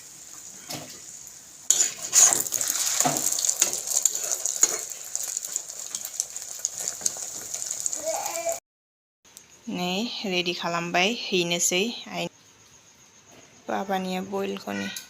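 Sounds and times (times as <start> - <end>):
egg sizzling in hot oil: 0.0 - 8.6.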